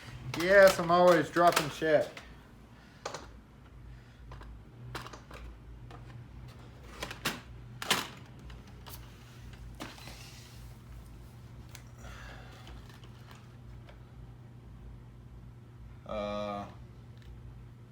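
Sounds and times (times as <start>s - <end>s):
padlocks and packaging clicking: 0.3s - 2.2s.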